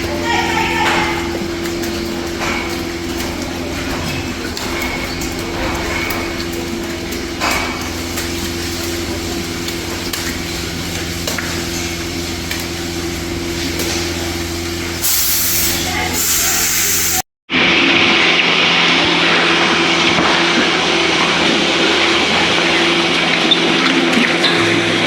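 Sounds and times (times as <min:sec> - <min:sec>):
vacuum system humming: 0:00.0 - 0:25.0
loud hiss: 0:15.0 - 0:17.2.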